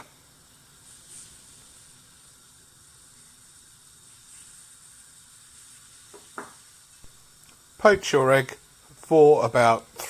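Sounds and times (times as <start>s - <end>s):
boiling water hiss: 0.0s - 10.0s.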